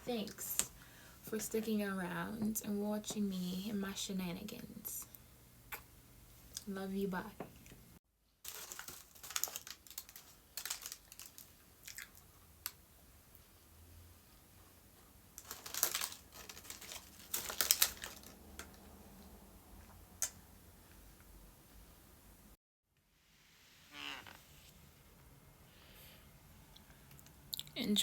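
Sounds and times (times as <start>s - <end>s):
rustling handling noises: 8.5s - 12.4s, 14.6s - 18.9s.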